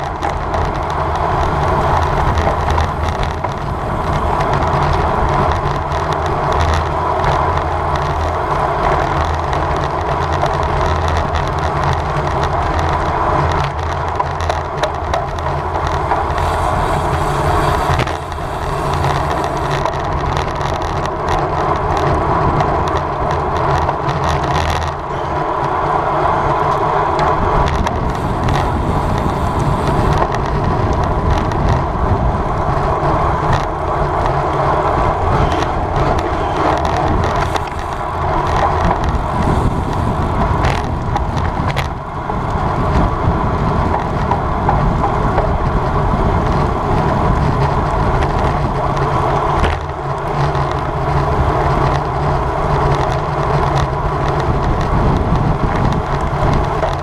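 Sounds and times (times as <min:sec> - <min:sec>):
bicycle tyres on pavement: 0:00.0 - 0:57.0
wind rushing: 0:00.6 - 0:06.8, 0:14.6 - 0:20.9, 0:25.8 - 0:48.2.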